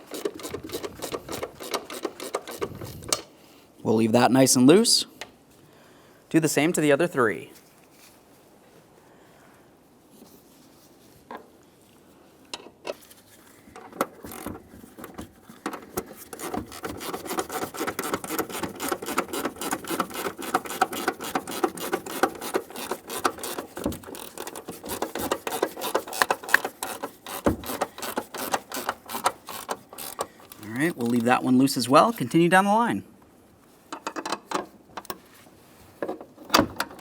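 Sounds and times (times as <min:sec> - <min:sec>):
hand ratchet clicking: 0:00.0 - 0:03.3, 0:14.1 - 0:14.5, 0:15.6 - 0:31.5.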